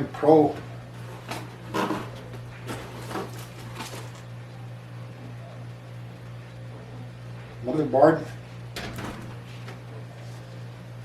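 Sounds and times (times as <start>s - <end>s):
steady low hum: 0.0s - 11.0s
rustling handling noises: 0.6s - 4.3s.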